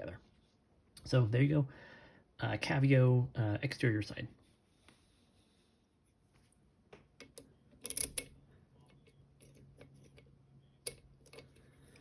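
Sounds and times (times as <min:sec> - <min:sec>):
faint low hum: 0:00.0 - 0:12.0
lock clicks and taps: 0:07.2 - 0:08.3.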